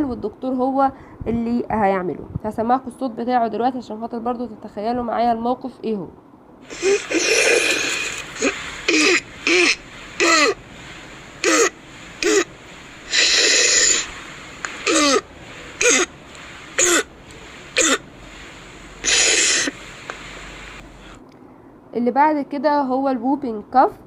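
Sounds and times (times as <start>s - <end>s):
noisy in-breath: 0.9s - 1.3s, 6.6s - 21.9s
child barking cough: 6.8s - 10.6s, 11.4s - 12.5s, 14.8s - 15.2s, 15.8s - 16.1s, 16.8s - 17.1s, 17.8s - 18.0s.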